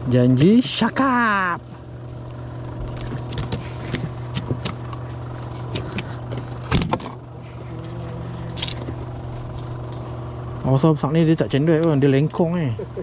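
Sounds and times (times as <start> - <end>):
boat engine idling: 0.0 - 13.0
fishing gear clicking and rattling: 1.9 - 6.8, 7.8 - 10.0.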